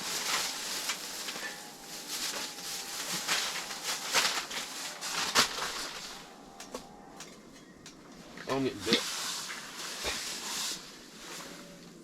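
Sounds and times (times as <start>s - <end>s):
rustling and handling noises: 0.0s - 12.0s.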